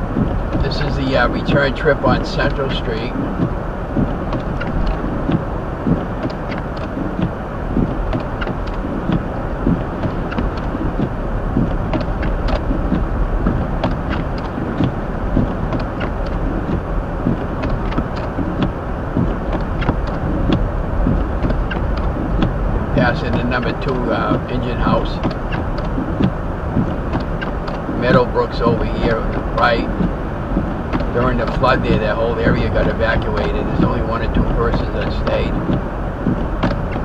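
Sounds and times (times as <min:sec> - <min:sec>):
road and tyre noise: 0:00.0 - 0:37.0
small ticks and clicks: 0:30.8 - 0:37.0.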